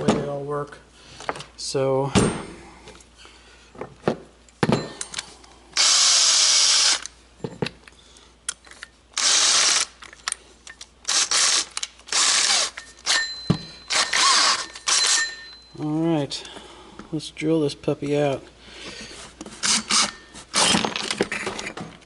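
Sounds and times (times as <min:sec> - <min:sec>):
power drill with hole saw: 0:05.8 - 0:07.0, 0:09.2 - 0:09.9, 0:11.1 - 0:13.2, 0:13.9 - 0:15.2, 0:19.6 - 0:21.1.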